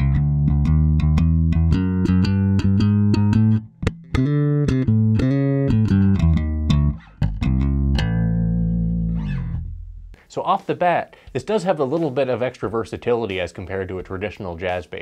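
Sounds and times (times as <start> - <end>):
electric bass riff: 0.0 - 10.3.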